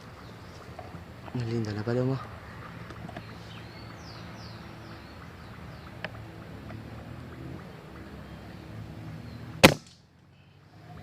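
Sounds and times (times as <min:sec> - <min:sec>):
quiet outdoor background: 0:00.0 - 0:11.0
air rifle shot crack: 0:09.6 - 0:10.0.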